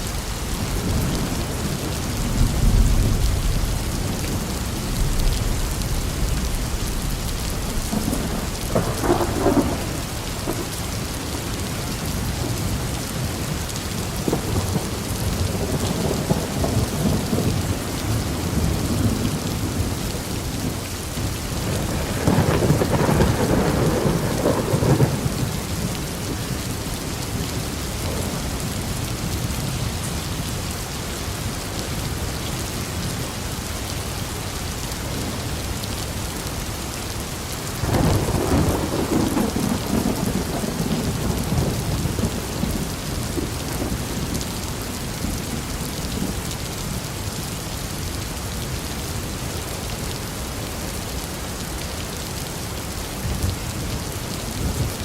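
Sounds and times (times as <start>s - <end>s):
steady rain falling: 0.0s - 55.0s
thunder rumbling: 0.1s - 13.3s, 14.0s - 29.9s, 37.8s - 46.5s.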